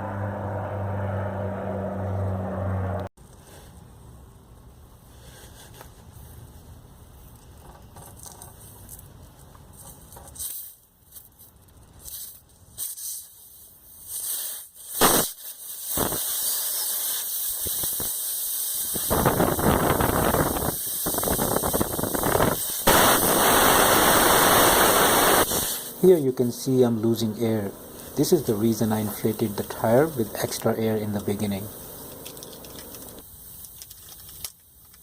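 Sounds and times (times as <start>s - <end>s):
air hissing from tire: 12.0s - 26.1s, 27.4s - 33.8s.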